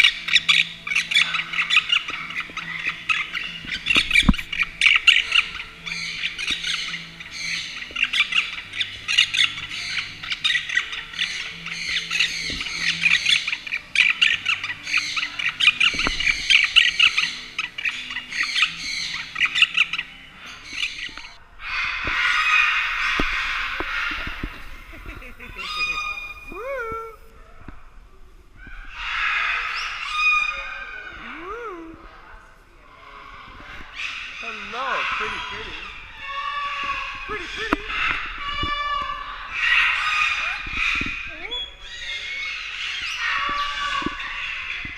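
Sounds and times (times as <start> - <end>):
parrot chattering and squawking: 0.0 - 27.3, 33.0 - 44.9.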